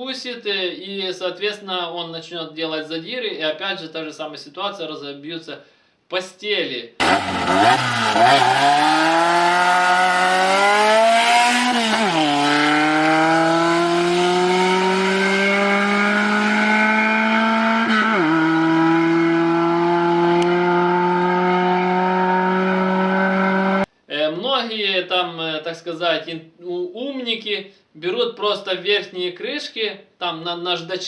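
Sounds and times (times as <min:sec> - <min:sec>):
car engine accelerating: 0:07.0 - 0:23.9.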